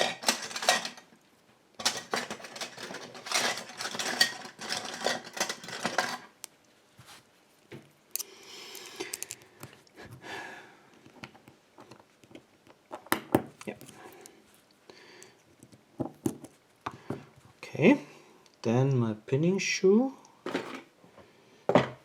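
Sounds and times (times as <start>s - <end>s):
screwdrivers clattering together: 0.0s - 1.1s, 1.8s - 6.3s, 8.8s - 9.5s.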